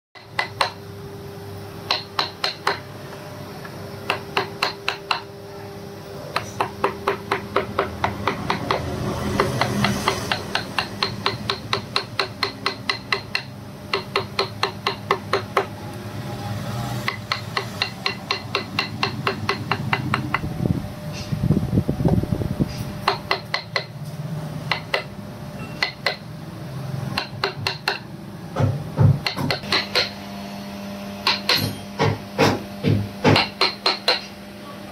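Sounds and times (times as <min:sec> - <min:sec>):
hammer tapping carving chisel: 0:00.2 - 0:00.8, 0:01.9 - 0:02.8, 0:04.0 - 0:05.3, 0:06.3 - 0:15.7, 0:17.0 - 0:20.5, 0:23.0 - 0:23.9, 0:24.7 - 0:26.2, 0:27.2 - 0:28.0, 0:28.6 - 0:30.1, 0:31.2 - 0:34.3.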